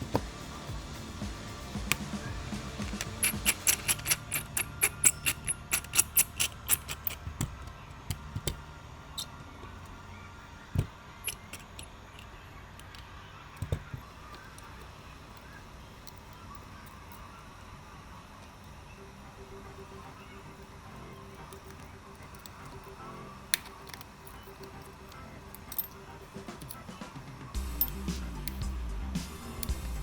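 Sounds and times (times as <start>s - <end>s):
small tools clicking against phone: 2.8s - 8.6s, 11.2s - 15.5s.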